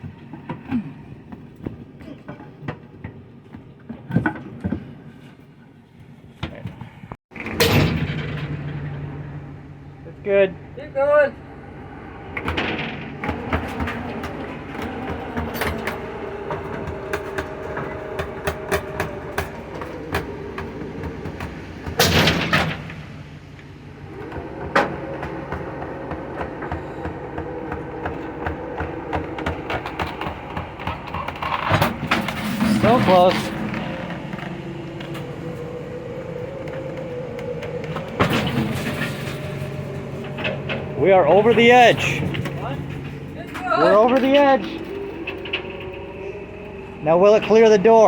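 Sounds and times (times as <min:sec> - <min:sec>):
mechanical hum: 0:00.0 - 0:48.0
metal being dragged: 0:11.8 - 0:48.0
clicks and creaks: 0:23.6 - 0:47.8.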